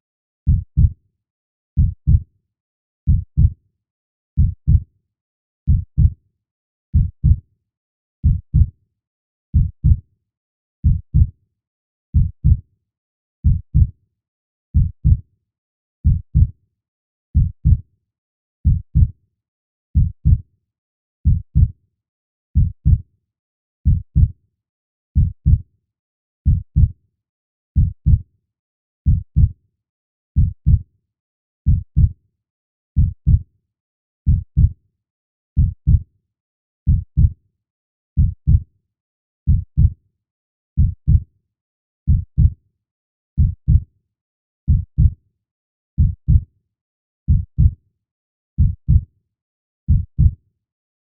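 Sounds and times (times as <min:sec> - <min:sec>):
heartbeat thumps: 0:04.4 - 0:04.8, 0:21.3 - 0:21.7, 0:31.7 - 0:32.1, 0:38.2 - 0:38.6, 0:40.8 - 0:41.2.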